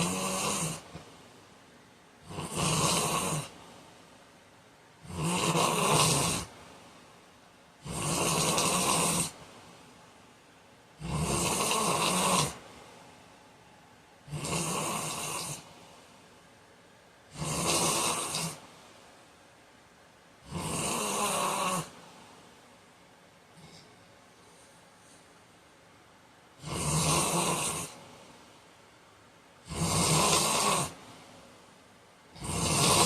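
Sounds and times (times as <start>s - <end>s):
man snoring loudly: 0.0s - 0.9s, 2.2s - 3.6s, 5.0s - 6.5s, 7.8s - 9.4s, 11.0s - 12.6s, 14.3s - 15.6s, 17.3s - 18.6s, 20.4s - 22.0s, 26.6s - 28.0s, 29.6s - 31.0s, 32.4s - 33.0s
quiet breathing: 0.0s - 19.4s, 20.4s - 25.9s, 26.5s - 33.0s.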